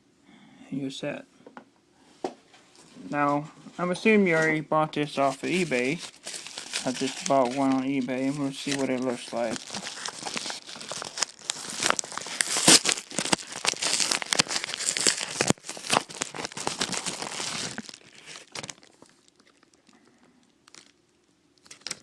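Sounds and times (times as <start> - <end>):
packaging tearing and crinkling: 5.2 - 19.8, 20.6 - 21.0, 21.6 - 22.0.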